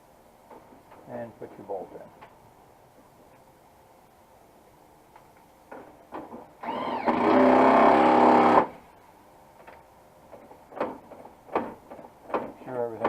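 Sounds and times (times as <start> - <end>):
small electric motor whirring: 6.6 - 8.7.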